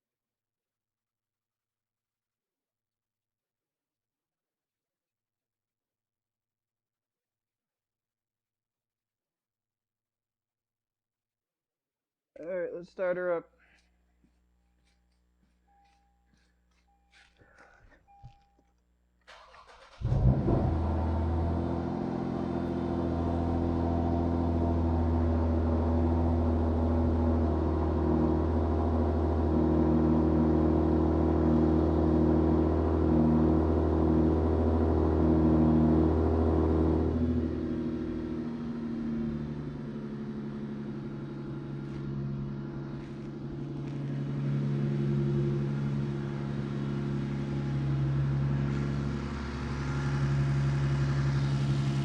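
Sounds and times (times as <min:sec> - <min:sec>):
car engine idling: 0:19.3 - 0:35.0, 0:36.2 - 0:52.0.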